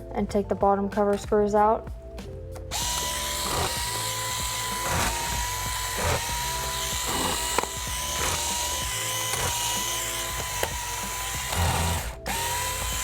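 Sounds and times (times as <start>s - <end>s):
electric screwdriver whining: 2.7s - 13.0s.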